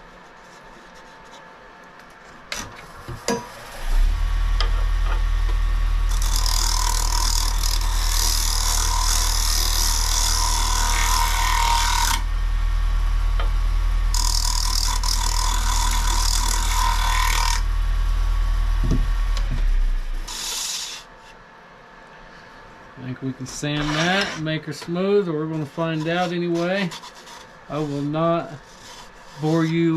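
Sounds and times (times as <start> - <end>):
wood lathe motor running: 3.6 - 20.8
turning tool scraping wood: 6.1 - 12.3, 14.1 - 17.7, 19.0 - 21.4, 23.4 - 29.9.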